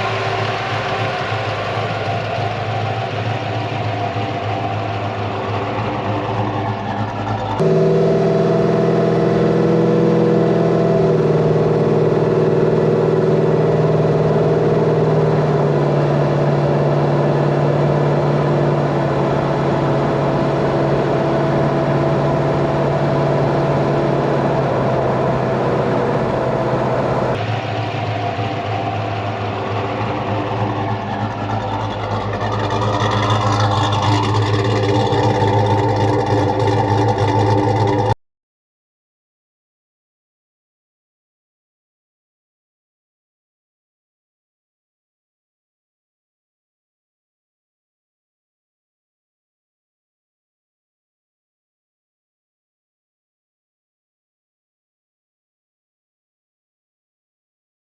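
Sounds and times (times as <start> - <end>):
car engine idling and revving: 0.0 - 38.2.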